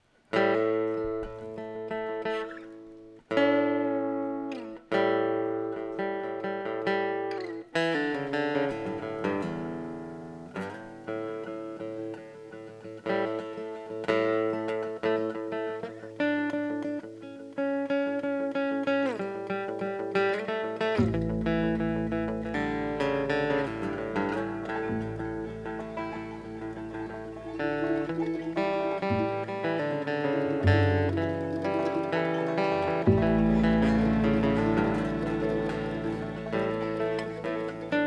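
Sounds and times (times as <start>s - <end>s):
plucked string instrument: 0.0s - 38.0s
low sustained drone: 31.0s - 38.0s.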